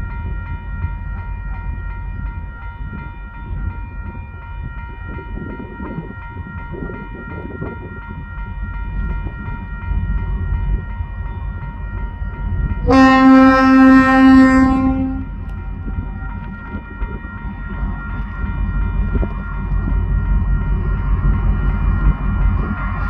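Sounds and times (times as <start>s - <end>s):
crossing warning bell ringing: 0.0s - 23.0s
train rumbling: 0.0s - 23.0s
locomotive horn blast: 12.8s - 15.4s.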